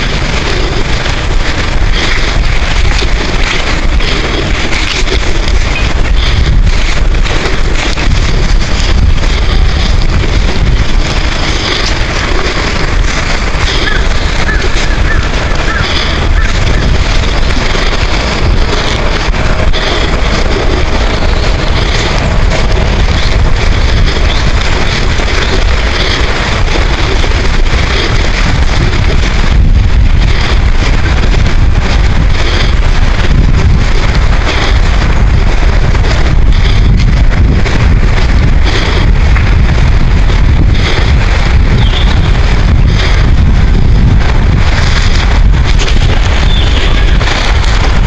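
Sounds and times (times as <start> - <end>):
wind buffeting microphone: 0.0 - 48.0
faint bird calls: 13.6 - 16.6.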